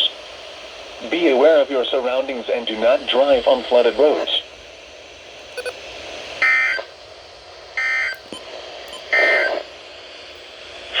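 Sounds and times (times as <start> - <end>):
two-tone digital data bursts: 5.6 - 5.8.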